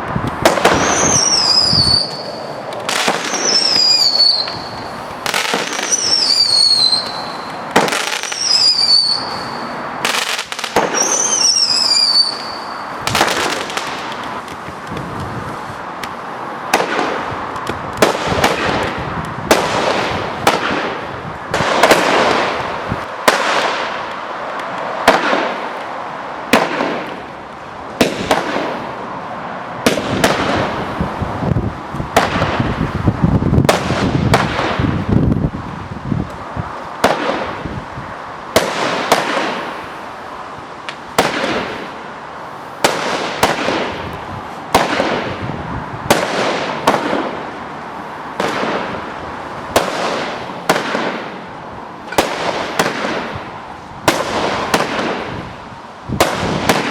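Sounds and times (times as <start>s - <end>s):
firework crackle: 0.0s - 29.2s, 29.8s - 56.9s
firework shots and bursts: 0.1s - 14.6s, 16.6s - 24.2s, 24.9s - 25.8s, 26.5s - 27.3s, 28.0s - 29.0s, 29.8s - 31.0s, 32.1s - 35.2s, 37.0s - 37.7s, 38.5s - 39.9s, 41.1s - 42.0s, 42.8s - 47.6s, 48.3s - 51.4s, 52.1s - 56.9s
falling firework whistles: 0.4s - 14.1s.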